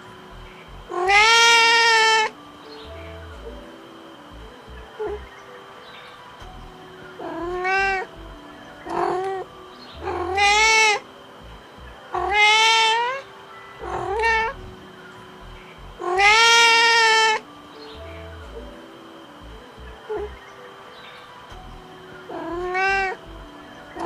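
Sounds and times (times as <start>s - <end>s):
cat meowing: 0.9s - 2.3s, 10.0s - 11.0s, 12.1s - 13.2s, 13.8s - 14.6s, 16.0s - 17.4s.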